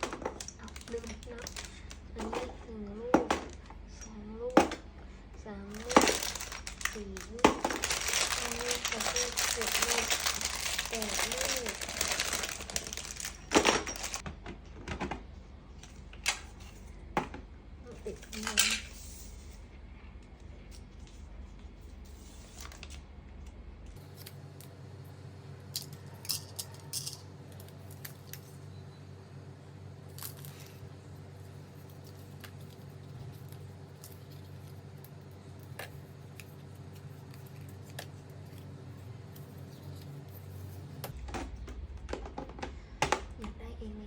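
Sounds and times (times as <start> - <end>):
low hum: 27.7 - 44.0.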